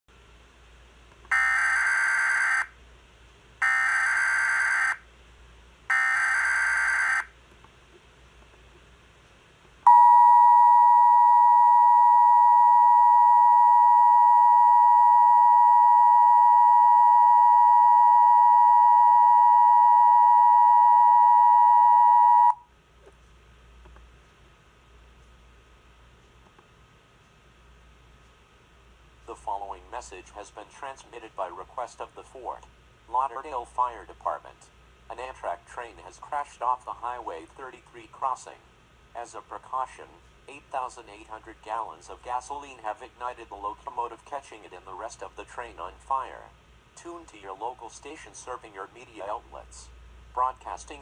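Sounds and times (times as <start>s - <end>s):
two-tone attention signal: 1.3s - 2.7s, 3.6s - 5.0s, 5.9s - 7.3s, 9.9s - 22.6s
data bursts: 5.9s - 7.3s.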